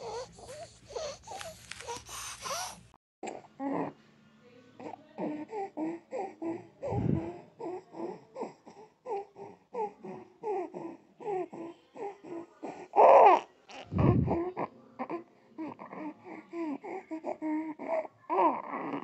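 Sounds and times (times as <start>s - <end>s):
baby's noisy harsh breathing: 0.0s - 2.9s, 5.2s - 13.2s, 13.8s - 14.5s
deep low sound: 6.9s - 7.3s, 13.9s - 14.5s.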